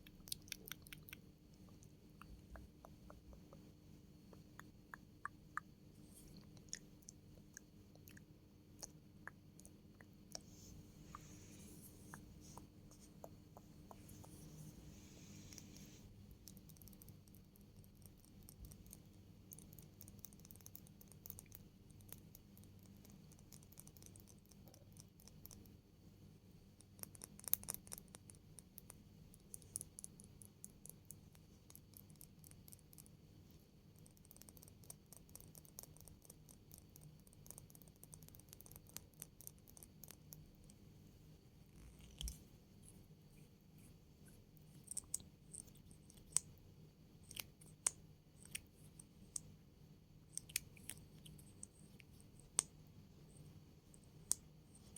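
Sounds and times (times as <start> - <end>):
soft scratching: 5.9 - 7.5, 10.3 - 16.1
crisp clicks and taps: 44.8 - 46.5.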